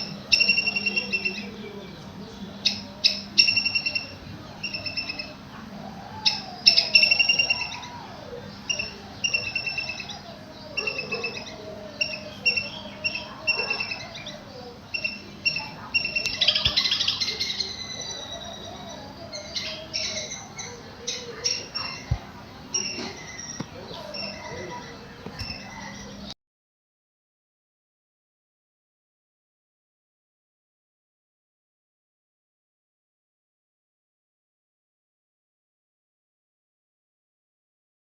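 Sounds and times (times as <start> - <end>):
squirrel high chirps: 0.0 - 1.5, 2.7 - 5.3, 6.2 - 26.3.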